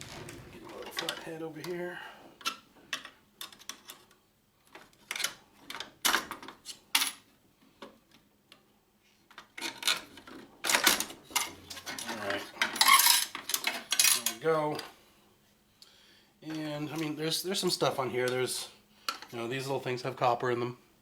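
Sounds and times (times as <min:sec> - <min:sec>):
metal parts clinking and clattering: 0:09.6 - 0:14.4.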